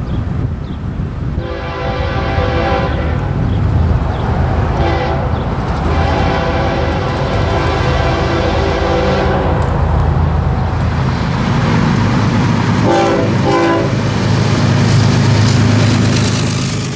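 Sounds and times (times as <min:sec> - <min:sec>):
locomotive engine drone: 0:00.0 - 0:16.9
locomotive horn blasts: 0:01.4 - 0:03.4, 0:04.7 - 0:09.8, 0:12.8 - 0:14.0.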